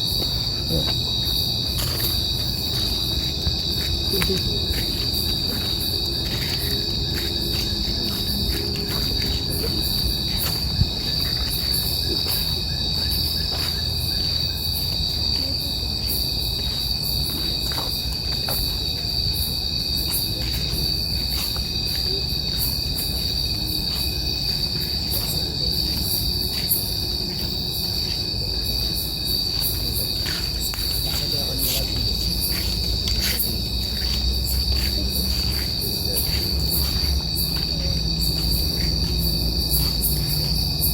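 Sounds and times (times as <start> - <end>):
night insects trilling: 0.0 - 40.9.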